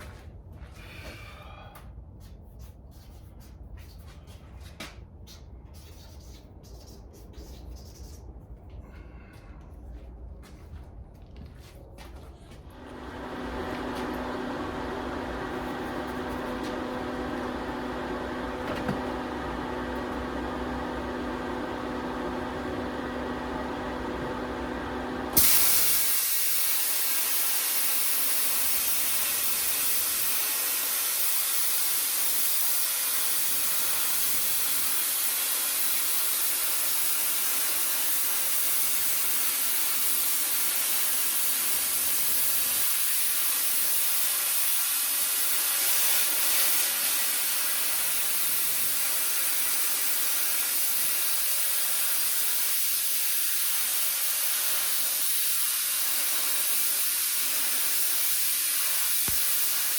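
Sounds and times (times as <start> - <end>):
compressed air hissing: 25.3 - 59.9.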